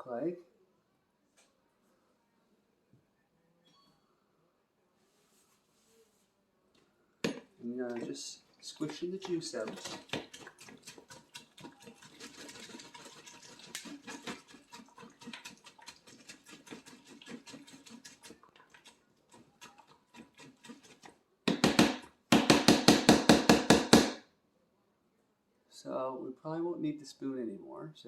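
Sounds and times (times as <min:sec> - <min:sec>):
spoon scraping melon pulp: 0:07.3 - 0:24.0
loud rapid knocks: 0:21.5 - 0:24.2.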